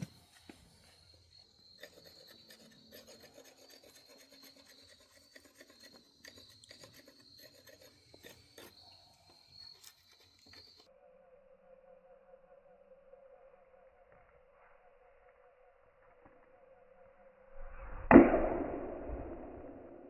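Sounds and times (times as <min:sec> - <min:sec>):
faint scraping and rubbing: 0:00.0 - 0:10.9.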